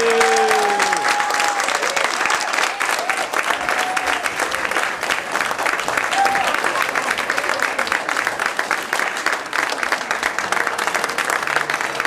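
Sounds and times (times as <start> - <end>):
crowd shouts: 0.0 - 4.3
audience applause with cheering: 0.0 - 12.0.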